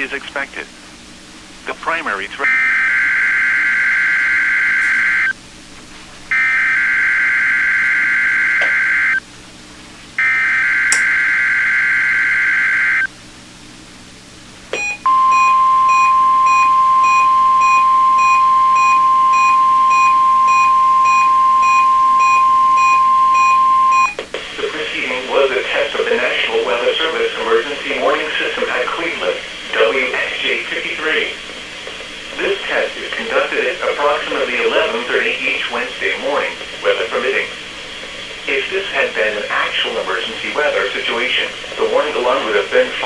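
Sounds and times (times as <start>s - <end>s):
steady warning alarm tone: 2.4s - 5.4s, 6.3s - 9.2s, 10.2s - 13.1s, 14.8s - 31.4s
faint pulsing beep: 14.8s - 24.2s.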